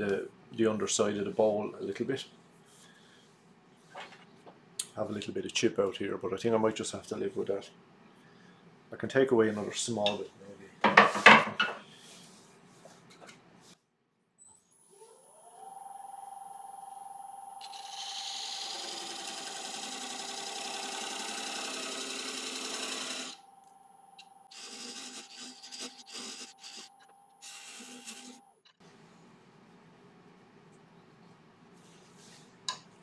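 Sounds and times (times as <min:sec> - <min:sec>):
wood lathe motor whine: 0:14.9 - 0:28.5
turning tool shaving wood: 0:17.6 - 0:23.6, 0:24.5 - 0:28.5.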